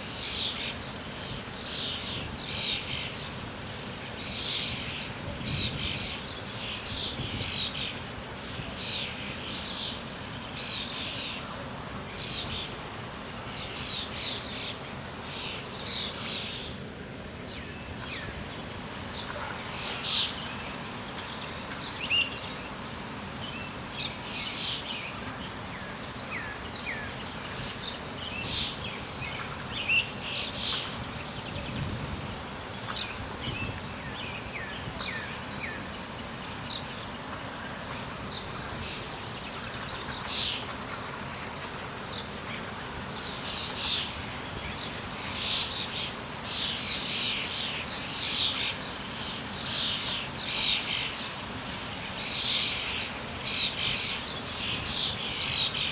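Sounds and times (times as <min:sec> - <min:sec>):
songbirds chirping: 0:00.0 - 0:55.9
steady background hiss: 0:00.0 - 0:55.9.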